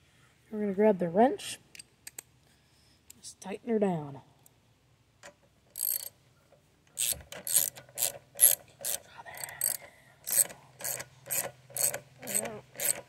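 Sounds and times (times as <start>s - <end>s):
ratchet wrench clicking: 5.7s - 6.1s, 6.9s - 13.0s.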